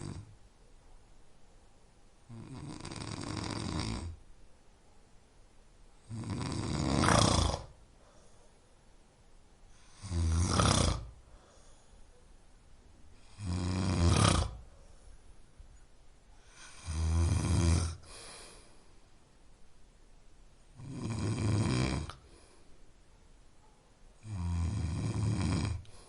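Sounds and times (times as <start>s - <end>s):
person snoring: 0.0s - 0.3s, 2.3s - 4.2s, 6.0s - 7.8s, 9.8s - 11.2s, 13.2s - 14.7s, 16.4s - 18.7s, 20.8s - 22.5s, 24.2s - 26.0s.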